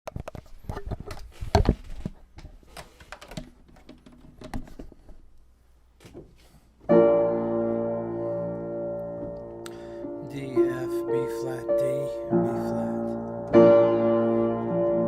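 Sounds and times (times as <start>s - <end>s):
piano chord ringing: 6.9s - 15.0s.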